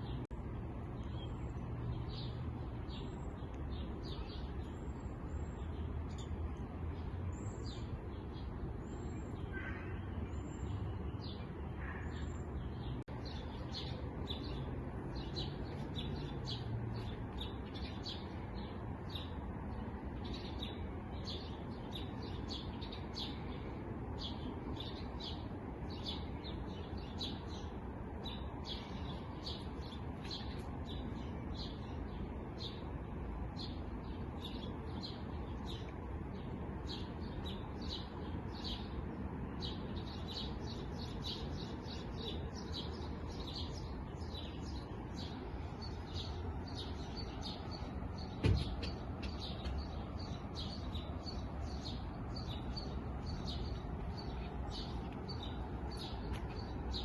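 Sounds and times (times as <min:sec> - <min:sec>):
small birds chirping: 0:00.0 - 0:57.0
sharp thump: 0:48.3 - 0:49.8.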